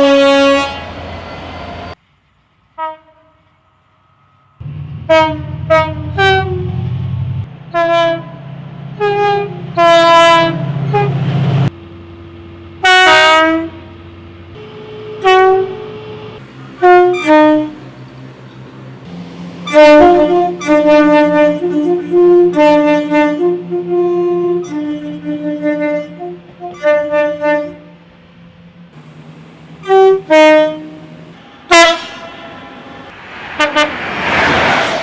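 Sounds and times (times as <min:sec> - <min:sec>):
train two-tone horn blasts: 0:00.0 - 0:01.4, 0:02.8 - 0:03.6, 0:05.0 - 0:07.0, 0:07.7 - 0:11.7, 0:12.8 - 0:13.9, 0:14.6 - 0:17.9, 0:19.6 - 0:28.1, 0:29.8 - 0:34.0.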